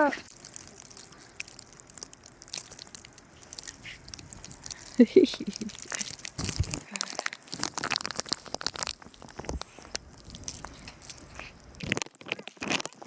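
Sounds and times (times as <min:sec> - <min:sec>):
snow crunching: 0:02.6 - 0:11.8.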